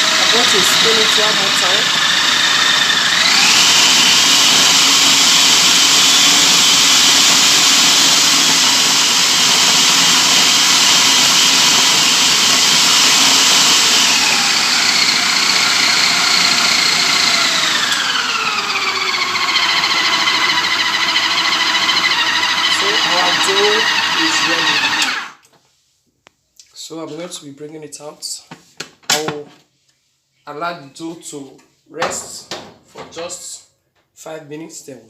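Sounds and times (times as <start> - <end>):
food processor motor whining: 0.0 - 25.4.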